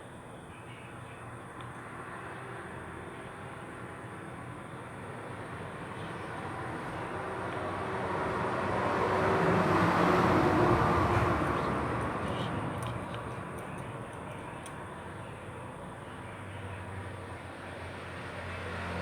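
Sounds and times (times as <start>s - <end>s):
vehicle passing by: 5.7s - 13.6s, 16.8s - 19.0s
small clicks: 12.0s - 14.8s.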